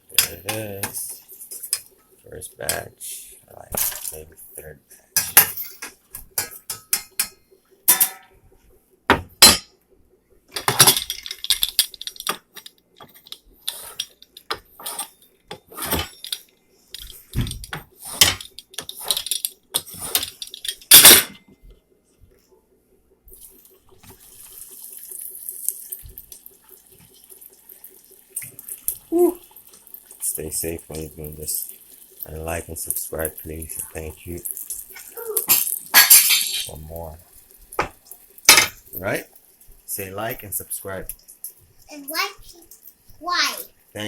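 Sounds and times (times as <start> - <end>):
pans and utensils clattering: 0.0 - 2.0, 5.2 - 8.4, 9.1 - 9.8, 10.5 - 21.4, 29.5 - 37.1, 37.7 - 39.3
steady hiss: 0.0 - 7.4, 23.3 - 44.0.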